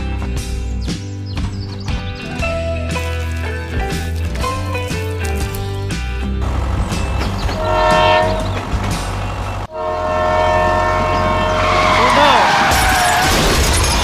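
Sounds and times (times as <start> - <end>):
horn-like held chord: 7.6 - 8.5, 9.7 - 12.4.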